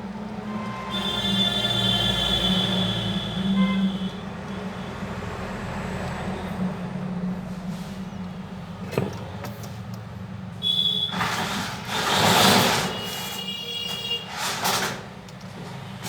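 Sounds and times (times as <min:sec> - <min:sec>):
short high vehicle horn tones: 0:00.4 - 0:05.0, 0:10.6 - 0:11.6, 0:12.8 - 0:14.6
vehicle passing: 0:04.3 - 0:09.4.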